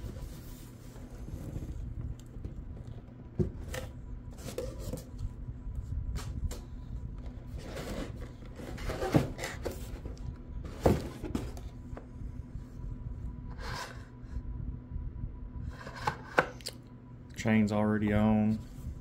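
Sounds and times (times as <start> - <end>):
steady low hum: 0.0 - 19.0
packaging rustling and scraping: 3.5 - 5.2, 7.5 - 11.7.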